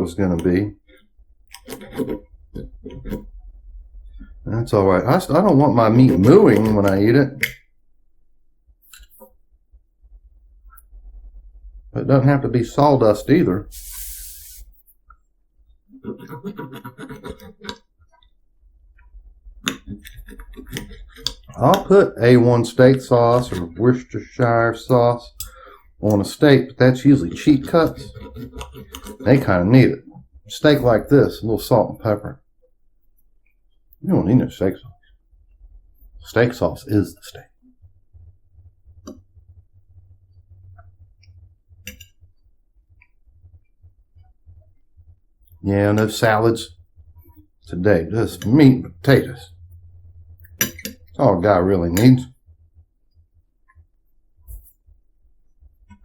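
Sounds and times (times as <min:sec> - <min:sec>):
low steady hum: 0:00.0 - 0:56.0
voiced murmur: 0:15.9 - 0:17.8, 0:19.8 - 0:32.3
man chewing: 0:19.0 - 0:21.9, 0:27.9 - 0:29.3.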